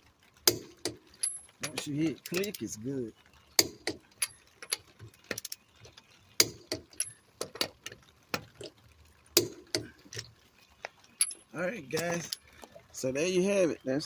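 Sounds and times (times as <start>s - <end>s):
wrench and socket clinking: 0.9s - 2.6s.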